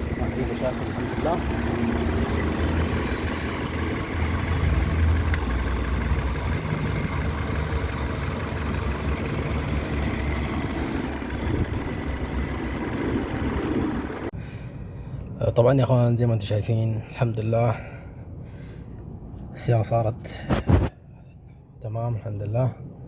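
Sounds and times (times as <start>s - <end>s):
car engine idling: 0.0s - 14.4s.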